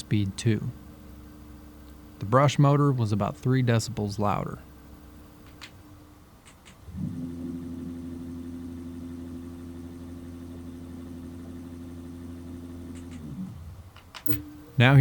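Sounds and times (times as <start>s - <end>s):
electric motor hum: 6.9s - 15.0s.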